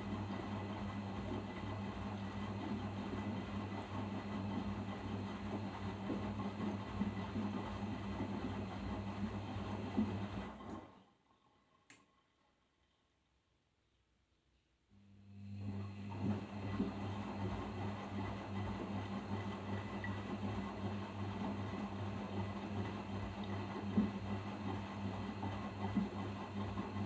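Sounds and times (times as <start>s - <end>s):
washing machine humming and churning: 0.0s - 11.5s, 15.2s - 27.0s.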